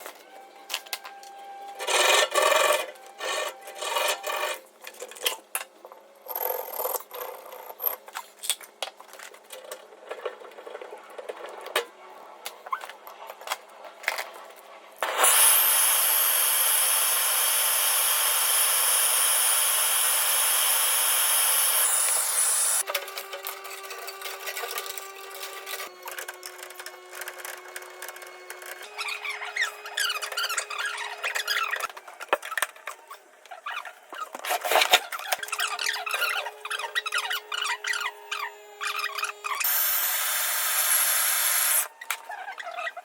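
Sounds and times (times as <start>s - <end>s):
tools scraping on metal tubing: 1.8s - 5.5s.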